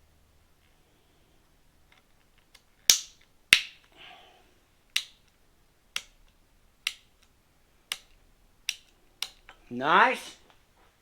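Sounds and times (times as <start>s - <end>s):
plastic switch buttons clicking: 7.9s - 9.6s.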